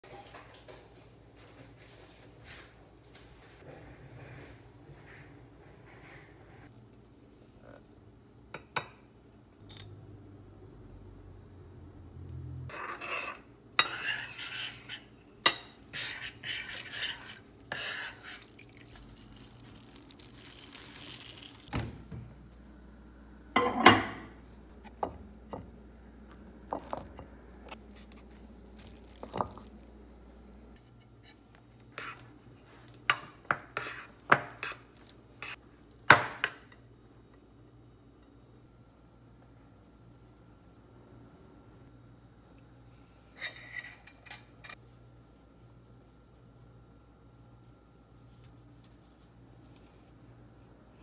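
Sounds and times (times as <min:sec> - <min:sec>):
spoon scraping bowl: 0:12.7 - 0:18.9, 0:31.2 - 0:32.3, 0:33.6 - 0:35.6.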